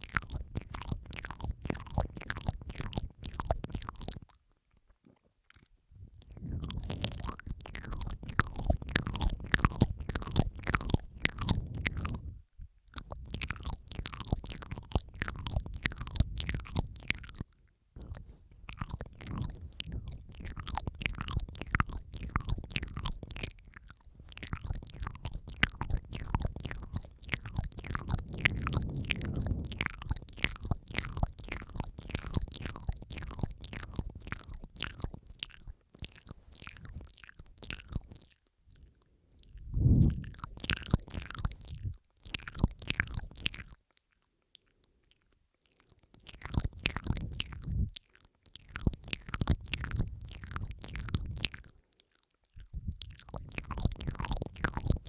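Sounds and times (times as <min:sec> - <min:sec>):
wet mouth clicks and smacks: 0:00.0 - 0:55.0.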